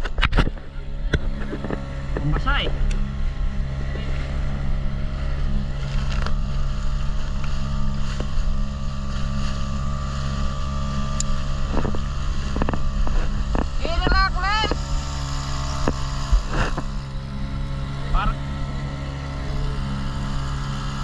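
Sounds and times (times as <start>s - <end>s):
motorboat engine running: 0.0s - 21.0s
wind buffeting microphone: 0.0s - 21.0s.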